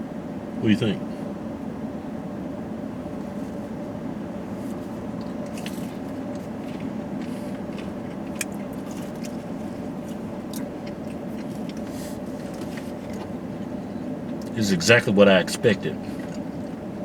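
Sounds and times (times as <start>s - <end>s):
car engine humming: 0.0s - 17.0s
chewing crunchy pizza crust: 4.7s - 14.5s, 16.0s - 17.0s.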